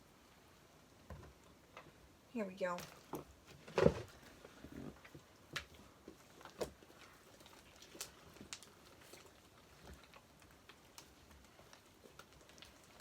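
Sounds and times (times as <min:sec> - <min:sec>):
slime clicking and squelching: 0:05.5 - 0:13.0.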